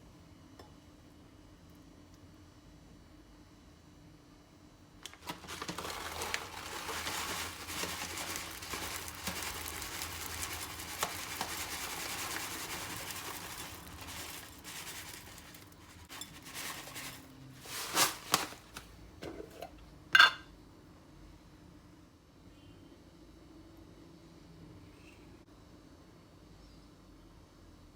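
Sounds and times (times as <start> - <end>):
tableware scraping and rustling: 14.1 - 20.5
glass clinking: 19.6 - 20.5.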